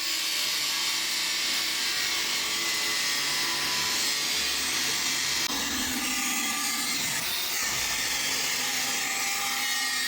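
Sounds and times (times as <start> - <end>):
cut-off disc motor whine: 3.5 - 8.7.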